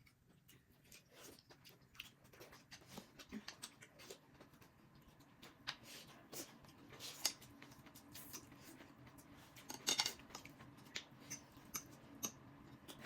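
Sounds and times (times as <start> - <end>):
utensils clicking against dishes: 9.7 - 10.2.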